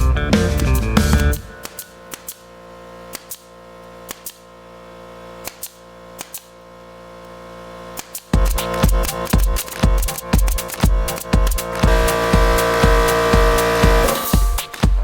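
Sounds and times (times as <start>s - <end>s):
pneumatic nailer firing: 1.4s - 4.6s, 5.4s - 6.6s, 7.9s - 14.8s.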